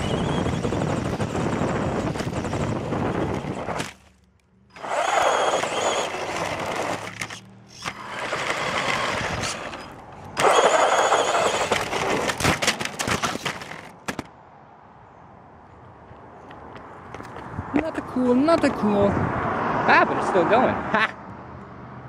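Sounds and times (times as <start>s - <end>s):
electric motor whining: 0.0s - 4.1s, 4.7s - 13.8s.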